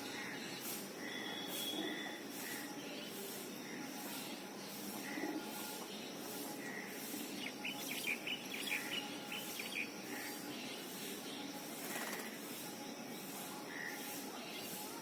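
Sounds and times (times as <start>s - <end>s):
outdoor background hiss: 0.0s - 15.0s
birds chirping: 4.1s - 12.4s.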